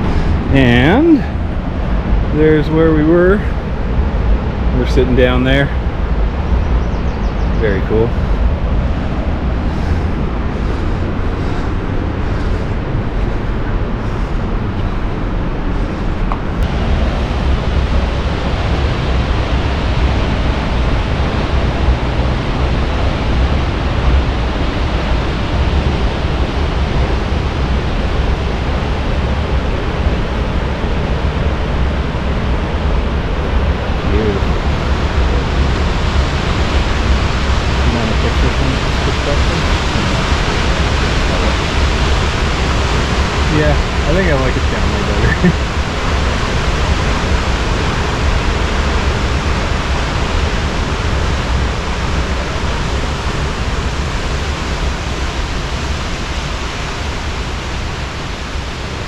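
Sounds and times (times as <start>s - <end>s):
waterfall roaring: 0.0s - 6.6s, 7.6s - 59.0s
wind buffeting microphone: 0.0s - 59.0s.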